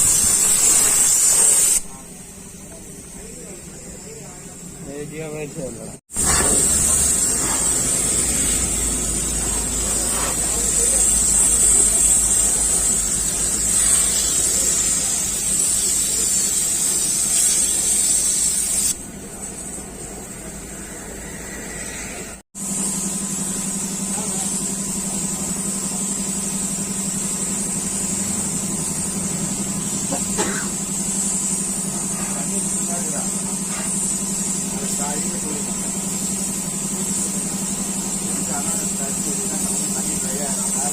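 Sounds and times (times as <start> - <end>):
steady hiss: 0.0 - 1.9, 6.1 - 22.4, 23.4 - 40.9
jeep engine rumbling: 4.7 - 16.2.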